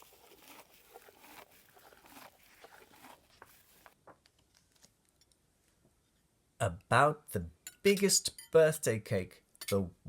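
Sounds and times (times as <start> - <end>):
faint rustling and crinkling: 0.0 - 6.2.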